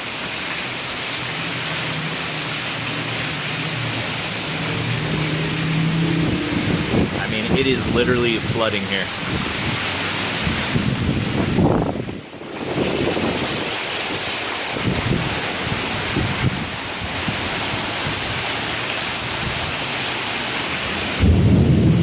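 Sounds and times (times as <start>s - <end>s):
hard rain hissing: 0.0s - 22.0s
wind buffeting microphone: 6.0s - 18.5s, 21.0s - 22.0s
low rumble of thunder: 21.1s - 22.0s.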